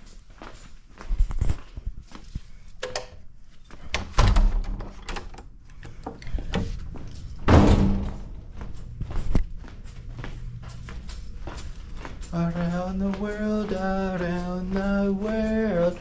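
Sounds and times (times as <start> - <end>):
door knocks and thuds: 7.5 - 8.3.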